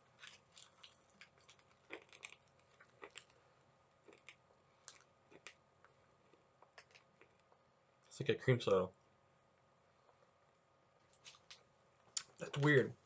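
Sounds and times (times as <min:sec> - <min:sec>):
person chewing candy: 0:00.0 - 0:07.6.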